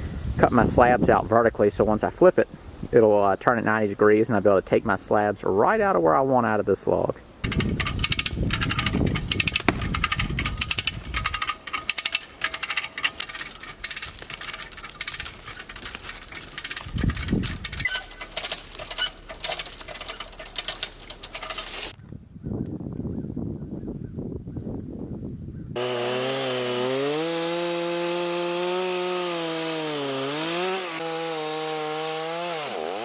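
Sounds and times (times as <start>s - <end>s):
heavy low thuds: 7.4s - 21.4s
ratchet clicking: 7.4s - 22.0s.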